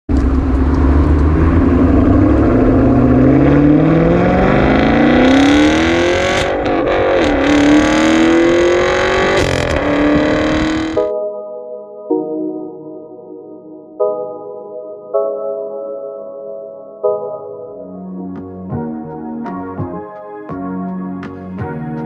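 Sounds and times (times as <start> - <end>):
car engine accelerating: 0.1 - 11.1.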